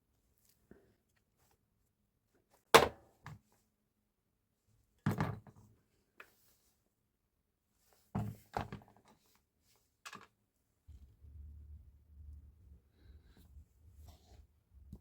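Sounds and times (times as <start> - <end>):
faint low rumble: 10.9 - 15.0.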